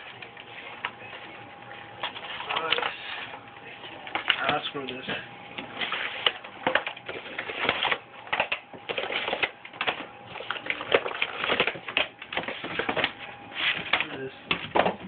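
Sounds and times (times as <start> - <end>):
packaging crinkling and ripping: 5.8 - 14.2.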